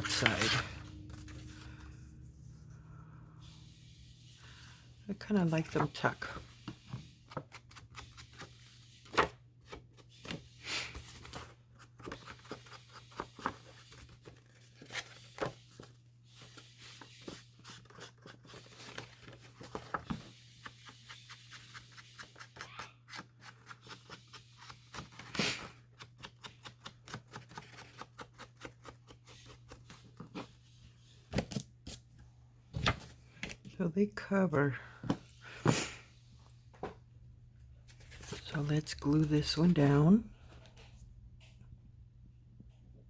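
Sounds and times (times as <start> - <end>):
paper rustling and sliding: 0.0 - 2.6, 5.5 - 22.6
faint low hum: 0.0 - 6.5.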